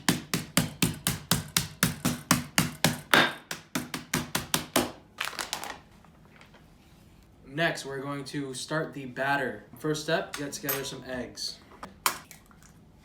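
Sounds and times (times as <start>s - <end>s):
meat being pounded flat: 0.0s - 5.0s.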